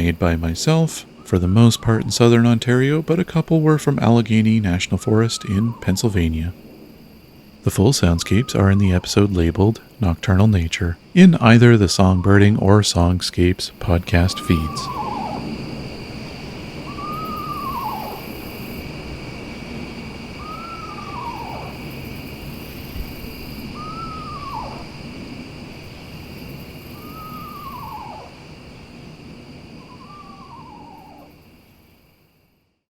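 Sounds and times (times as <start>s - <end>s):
owl whinny call: 4.9s - 6.6s, 14.0s - 18.9s, 20.3s - 25.1s, 26.7s - 28.5s, 29.8s - 31.4s.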